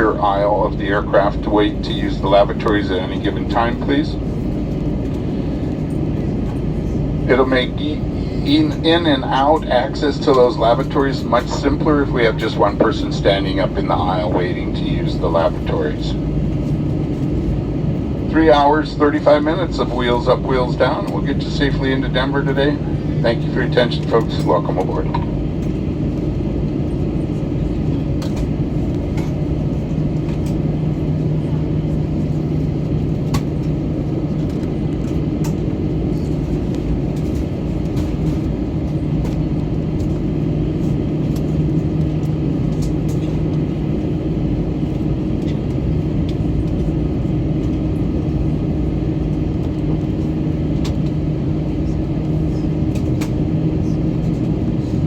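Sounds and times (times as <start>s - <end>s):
airplane cabin engine rumble: 0.0s - 55.0s.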